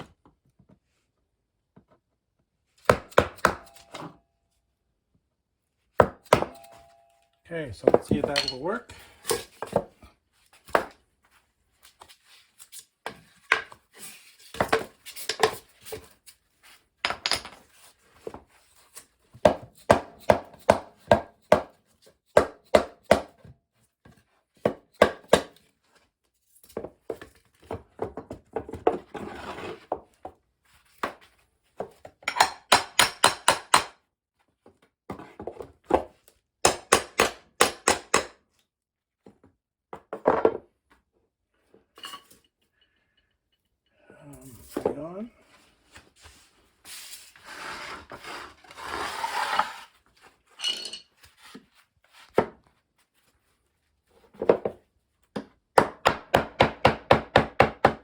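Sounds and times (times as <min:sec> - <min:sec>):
hammer tapping on wood tile: 0:32.3 - 0:34.0, 0:36.6 - 0:38.3, 0:55.4 - 0:58.0
short scrape: 0:46.9 - 0:49.9.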